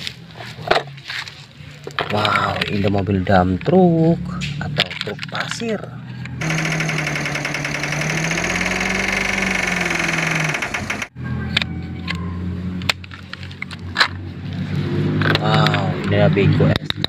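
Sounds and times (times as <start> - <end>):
sharp clicks: 6.4 - 11.1
truck engine idling: 6.4 - 11.1.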